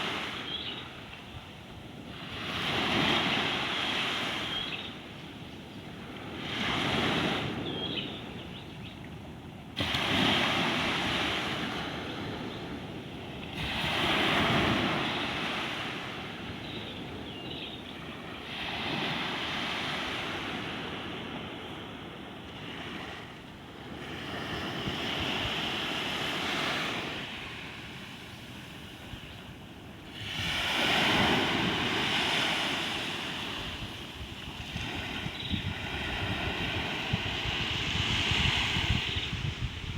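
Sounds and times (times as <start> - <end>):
ocean waves breaking: 30.0 - 39.9.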